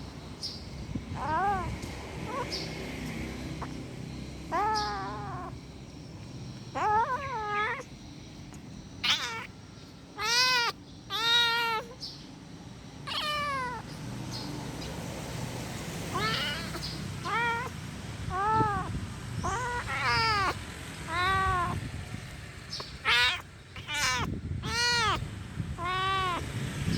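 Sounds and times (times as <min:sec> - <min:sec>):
kitten meowing angrily: 0:01.2 - 0:02.5, 0:04.5 - 0:05.6, 0:06.6 - 0:07.9, 0:08.5 - 0:09.5, 0:10.2 - 0:12.0, 0:13.1 - 0:13.9, 0:16.1 - 0:22.0, 0:22.7 - 0:26.4.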